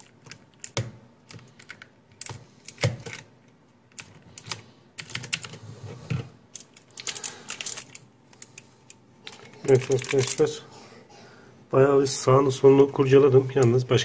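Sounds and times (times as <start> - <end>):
keyboard keys clicking and clacking: 3.9 - 5.6.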